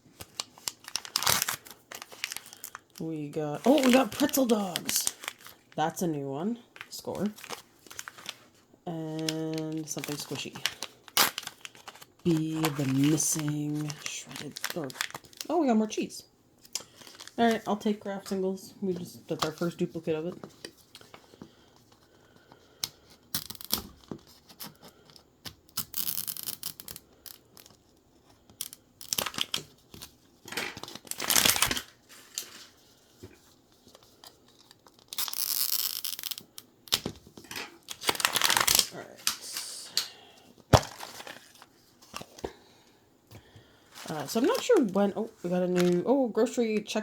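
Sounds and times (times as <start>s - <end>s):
plastic wrapping tearing and crinkling: 0.1s - 5.8s, 6.8s - 8.5s, 9.1s - 15.5s, 16.6s - 17.8s, 23.4s - 24.8s, 25.7s - 27.9s, 28.5s - 32.8s, 33.8s - 39.8s, 40.7s - 42.4s.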